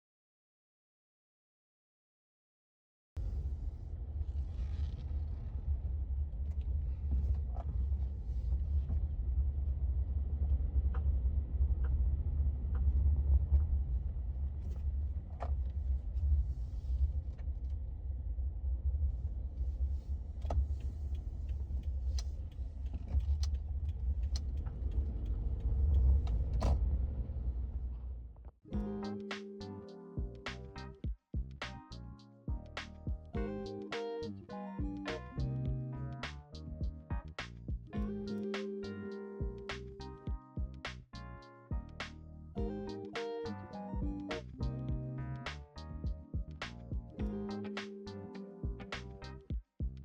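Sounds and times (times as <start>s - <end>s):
car road rumble: 3.2s - 28.5s.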